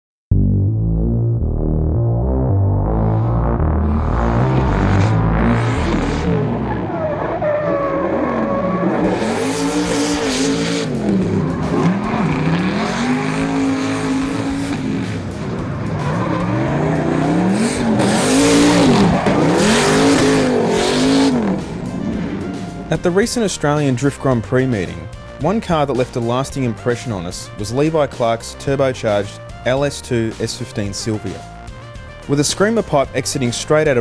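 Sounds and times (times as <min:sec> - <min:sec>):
turbocharged car engine revving: 0:00.8 - 0:25.5
tyres squealing: 0:04.0 - 0:21.7.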